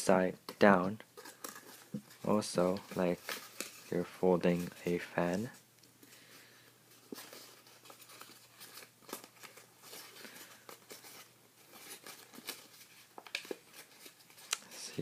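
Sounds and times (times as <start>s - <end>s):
paper crinkling and clicking: 1.2s - 4.0s, 7.1s - 15.0s.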